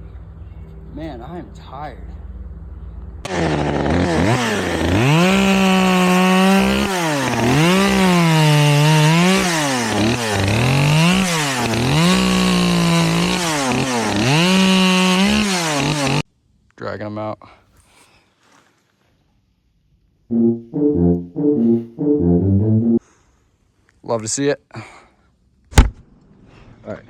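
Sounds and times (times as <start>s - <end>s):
chainsaw cutting wood: 3.2s - 16.2s.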